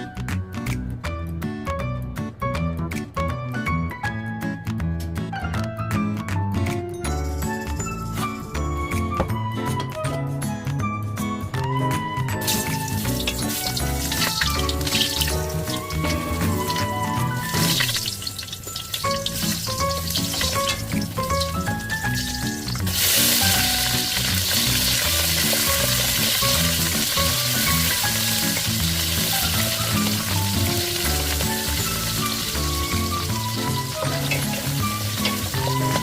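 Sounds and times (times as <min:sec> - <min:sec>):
stir-fry sizzling in a hot pan: 0:12.5 - 0:36.0.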